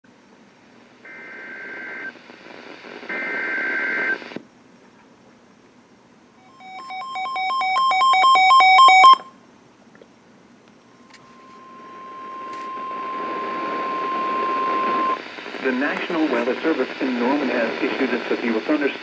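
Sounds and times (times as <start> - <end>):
rapid two-tone electronic beeping: 11.0 - 15.2.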